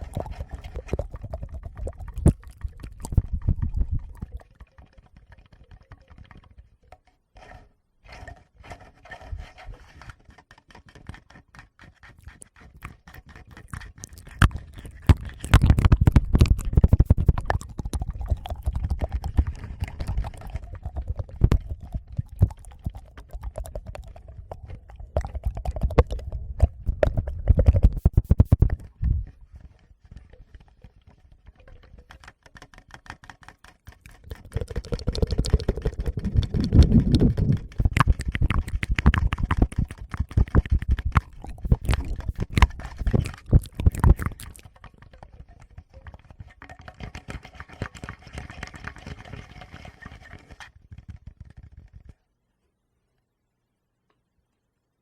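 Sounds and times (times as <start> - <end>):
fingers thumping on microphones: 14.4 - 19.1, 25.5 - 29.2, 34.9 - 44.6.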